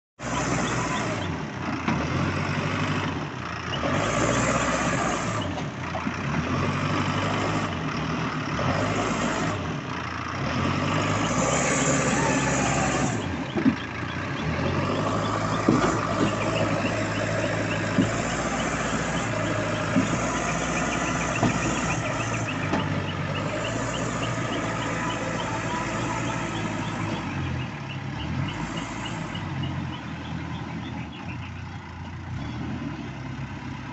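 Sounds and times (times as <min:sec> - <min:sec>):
diesel engine working: 0:00.2 - 0:33.9
sharp metallic knocks: 0:13.5 - 0:27.3.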